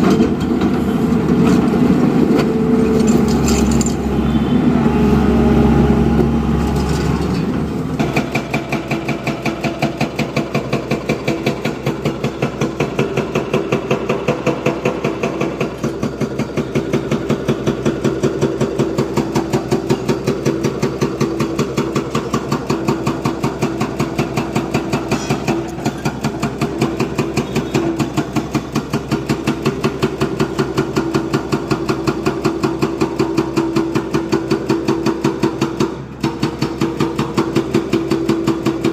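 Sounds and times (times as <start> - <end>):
diesel engine knocking: 7.9 - 38.9.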